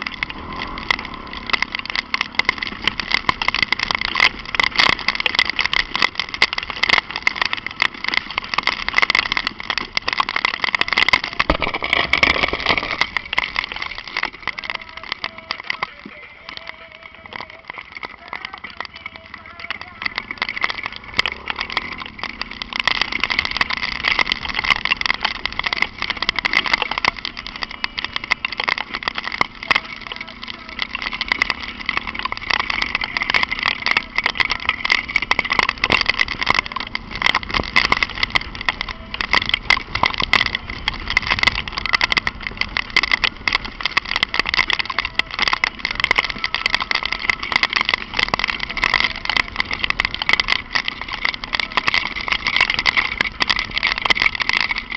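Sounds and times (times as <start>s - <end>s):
motorcycle engine running: 0.0s - 15.8s, 16.7s - 54.9s
crackle of quick ticks: 0.0s - 54.9s
rain hiss: 0.0s - 54.9s.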